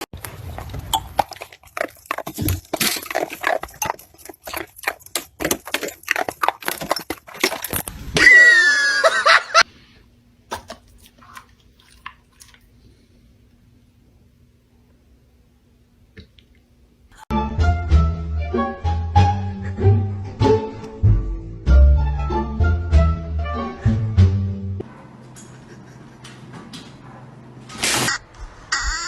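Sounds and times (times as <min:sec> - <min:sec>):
animal chewing: 0:00.2 - 0:08.0.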